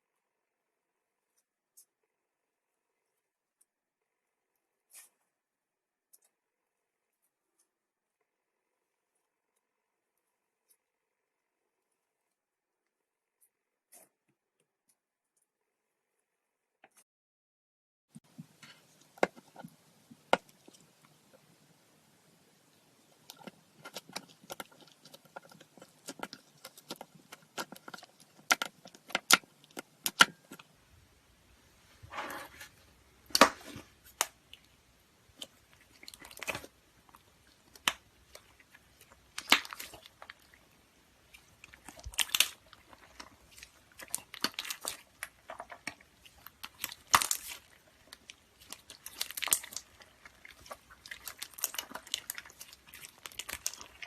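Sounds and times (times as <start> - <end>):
slime clicking and squishing: 22.8 - 30.8, 33.2 - 54.0.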